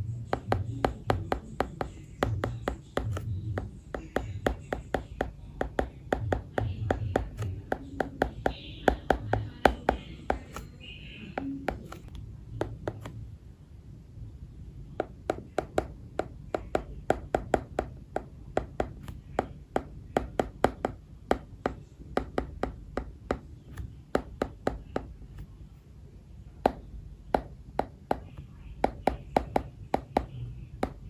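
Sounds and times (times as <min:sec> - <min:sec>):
stylus tapping on glass screen: 0:11.3 - 0:13.2.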